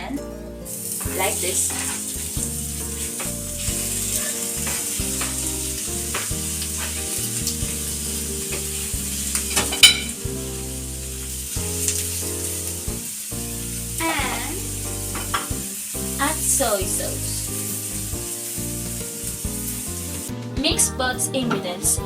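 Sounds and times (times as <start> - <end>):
chicken sizzling in a pan: 0.7 - 20.4
stirring in a pan: 1.0 - 10.2.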